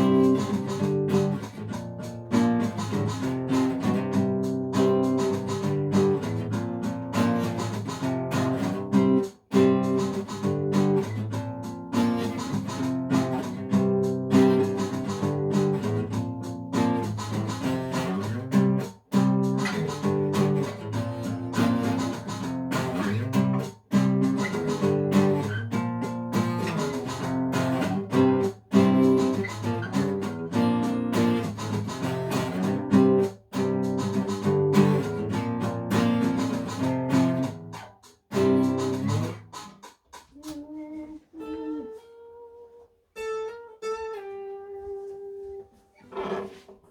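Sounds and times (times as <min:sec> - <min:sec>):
acoustic guitar music: 0:00.0 - 0:46.9.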